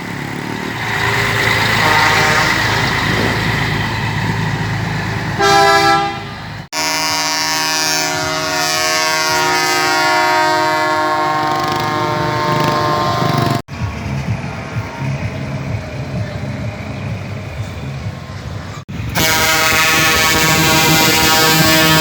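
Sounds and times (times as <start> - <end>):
engine rumble: 0.0 - 6.7, 10.5 - 22.0
truck air horns blowing: 1.6 - 2.9, 5.4 - 13.6, 19.1 - 22.0.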